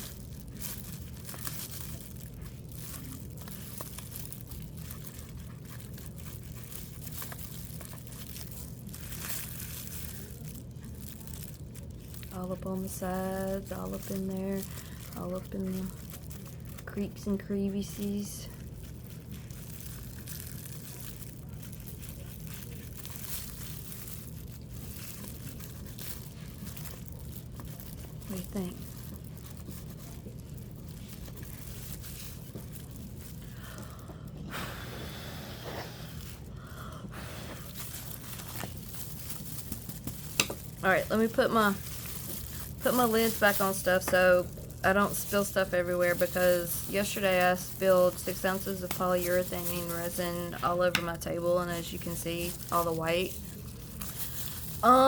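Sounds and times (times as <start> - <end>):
low electrical hum: 0.0 - 55.0.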